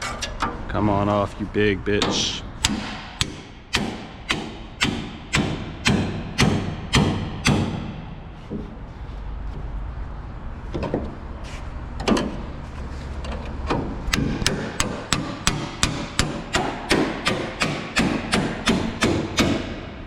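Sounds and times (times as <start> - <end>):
hammer striking sheet metal: 2.0 - 8.3, 14.1 - 20.0.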